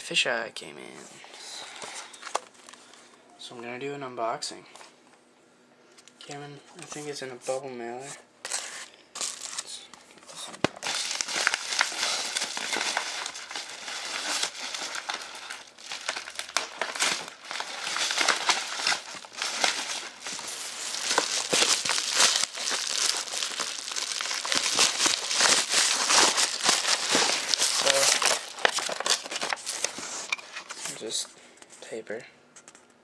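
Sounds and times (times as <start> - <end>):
packaging ripping: 8.4 - 9.8, 10.4 - 31.1
plastic packaging crinkling: 8.4 - 31.3.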